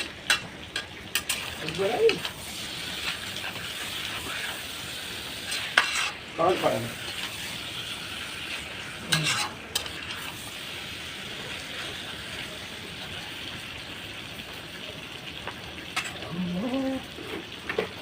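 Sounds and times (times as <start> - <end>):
food sizzling in a pan: 0.0 - 18.0.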